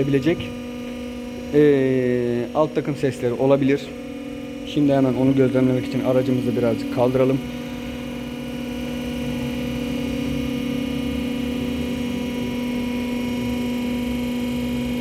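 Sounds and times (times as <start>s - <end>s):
car lift electric motor humming: 0.0s - 15.0s.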